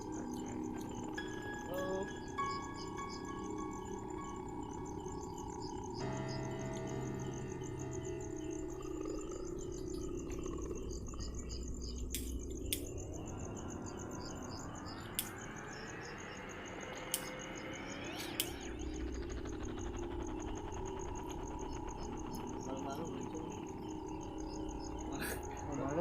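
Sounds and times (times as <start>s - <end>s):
night insects chirping: 0.0s - 26.0s
sharp clicks: 12.1s - 13.0s, 15.1s - 15.5s, 16.9s - 18.7s.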